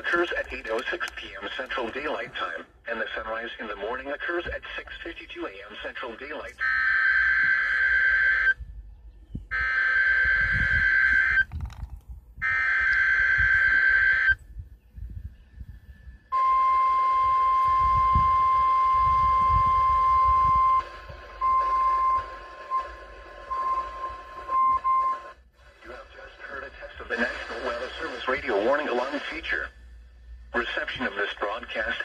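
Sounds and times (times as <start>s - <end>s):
steady warning alarm tone: 6.5s - 8.6s, 9.5s - 11.5s, 12.4s - 14.4s, 16.2s - 25.4s.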